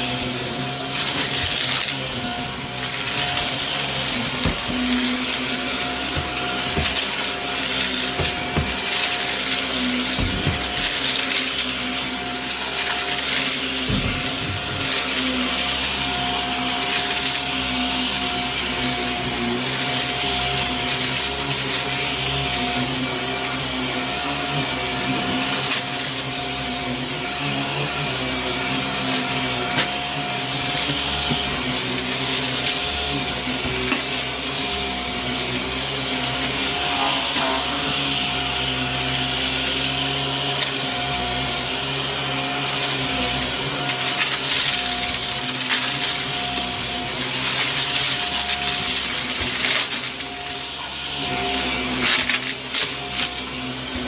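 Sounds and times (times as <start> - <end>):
vacuum cleaner running: 0.0 - 54.0.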